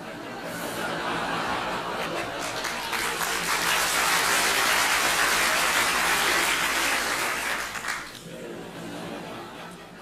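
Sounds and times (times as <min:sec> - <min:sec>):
audience applause: 0:01.6 - 0:08.4.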